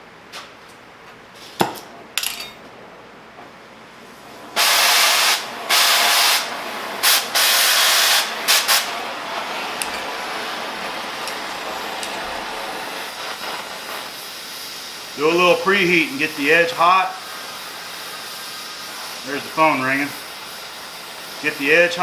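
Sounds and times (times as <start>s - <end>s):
steady flame hiss: 3.0s - 22.0s
cutting torch gas hiss: 4.5s - 22.0s.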